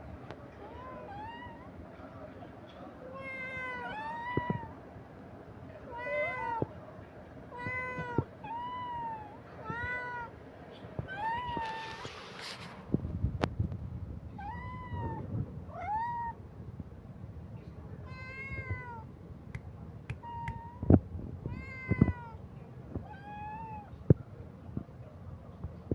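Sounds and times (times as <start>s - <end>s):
kitten meowing: 11.1s - 12.7s, 20.1s - 20.9s.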